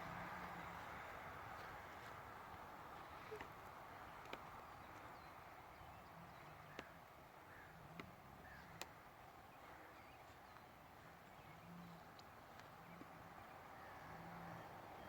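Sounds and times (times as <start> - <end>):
faint outdoor hiss: 0.0 - 15.0
faint sharp clicks: 4.1 - 4.5, 8.7 - 9.0, 12.1 - 13.1.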